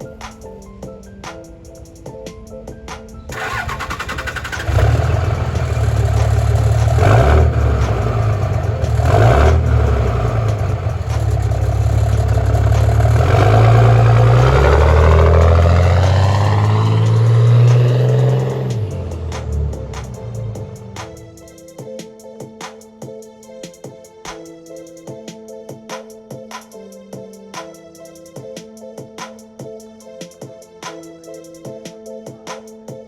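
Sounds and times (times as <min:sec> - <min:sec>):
diesel engine starting and revving: 0:03.3 - 0:20.8.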